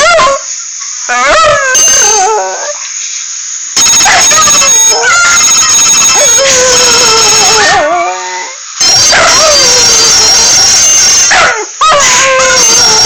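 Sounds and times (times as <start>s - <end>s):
phone ringtone: 3.8s - 7.7s, 8.8s - 11.3s
dog howling: 4.1s - 10.0s, 11.3s - 13.0s.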